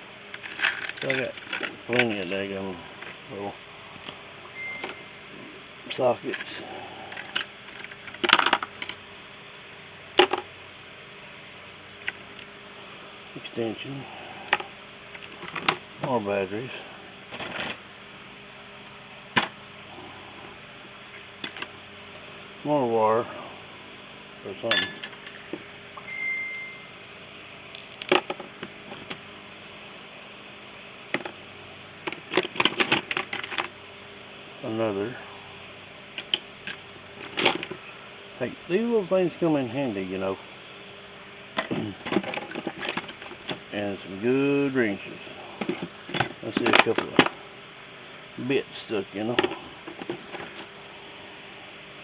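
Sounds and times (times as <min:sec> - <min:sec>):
metal sockets clinking: 0:00.3 - 0:03.3, 0:04.0 - 0:05.0, 0:06.2 - 0:09.0, 0:12.0 - 0:12.5, 0:14.5 - 0:15.8, 0:21.4 - 0:21.8, 0:24.7 - 0:26.8, 0:27.8 - 0:29.2, 0:32.1 - 0:33.7, 0:36.2 - 0:37.7, 0:41.6 - 0:43.7, 0:45.6 - 0:48.2, 0:49.4 - 0:50.7
steady high tone: 0:04.6 - 0:05.5, 0:26.0 - 0:27.0.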